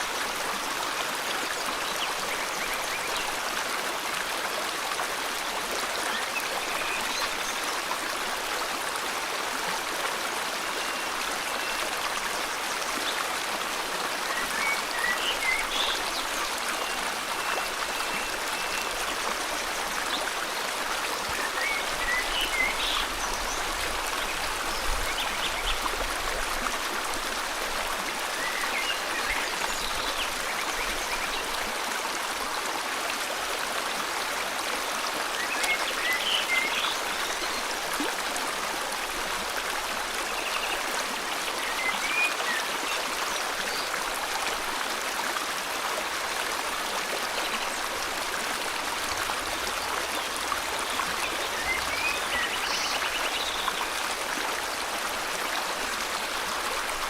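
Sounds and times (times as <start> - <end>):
river flowing: 0.0 - 57.0.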